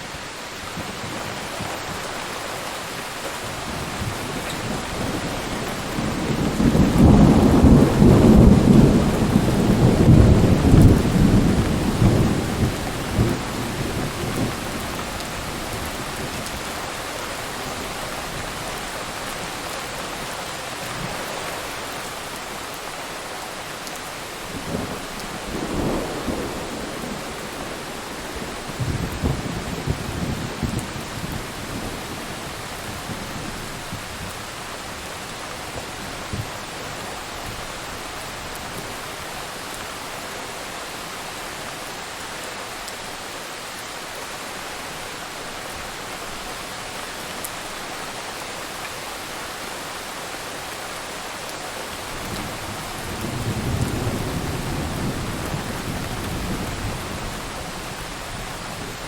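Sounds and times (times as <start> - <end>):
heavy rain: 0.0 - 59.0
rolling thunder: 3.6 - 16.8, 24.6 - 34.5, 52.1 - 59.0.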